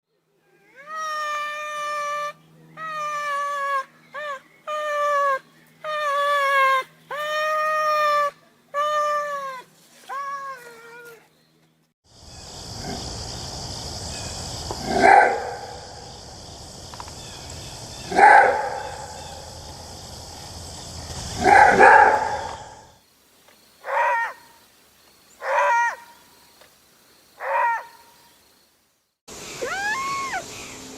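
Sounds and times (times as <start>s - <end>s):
steady high hiss: 12.1s - 27.4s, 28.0s - 30.9s
wolf barking: 14.8s - 16.0s, 18.1s - 19.5s, 21.4s - 22.8s, 25.4s - 26.1s, 27.4s - 28.0s.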